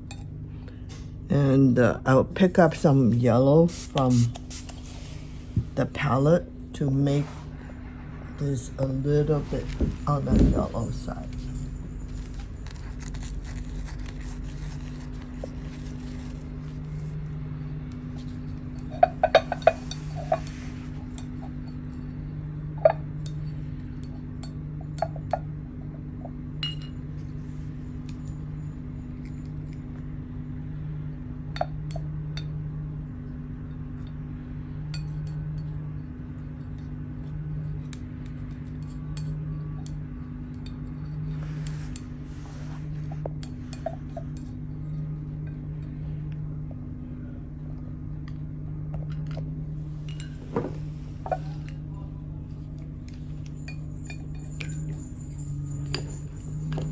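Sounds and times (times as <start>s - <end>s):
steady low hum: 0.0s - 56.9s
brush clinking on ceramic dishes: 18.2s - 26.0s, 26.6s - 29.8s, 33.5s - 46.0s, 49.1s - 56.9s.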